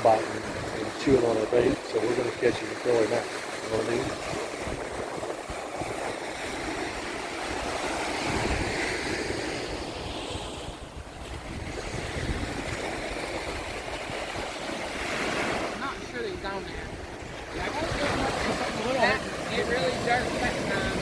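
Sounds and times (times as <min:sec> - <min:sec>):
surf washing onto beach: 0:00.0 - 0:21.0
wind buffeting microphone: 0:00.0 - 0:21.0.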